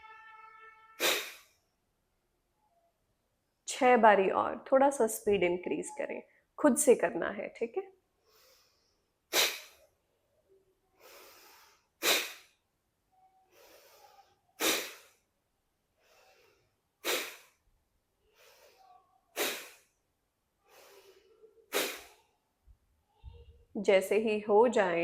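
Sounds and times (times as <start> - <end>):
forceful nasal exhales: 1.0 - 1.5, 8.3 - 9.8, 11.0 - 12.6, 13.6 - 15.2, 16.0 - 17.6, 18.4 - 19.9, 20.7 - 22.2
soft inhales: 8.2 - 9.0, 11.0 - 12.4, 13.5 - 15.1, 16.0 - 17.6, 18.2 - 19.8, 20.6 - 22.2.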